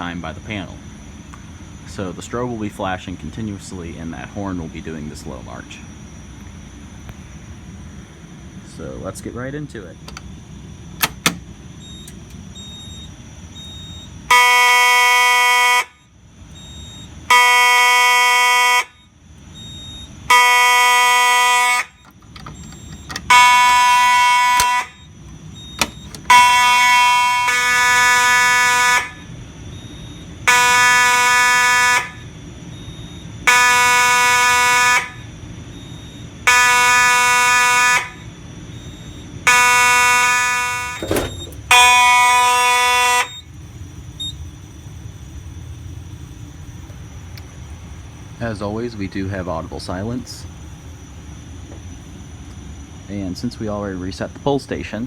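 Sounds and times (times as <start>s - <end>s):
fire alarm horn buzzing: 10.8s - 46.6s
sharp click: 11.0s - 11.4s.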